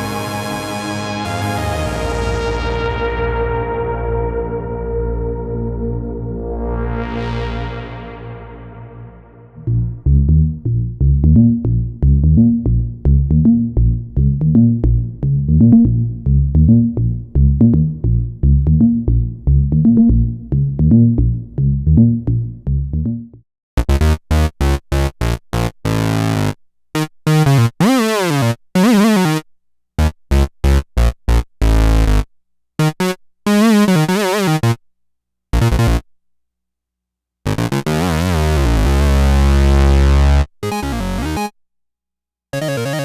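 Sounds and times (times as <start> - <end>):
analog synthesizer notes: 0.0 - 23.2, 35.6 - 36.0, 37.5 - 41.5.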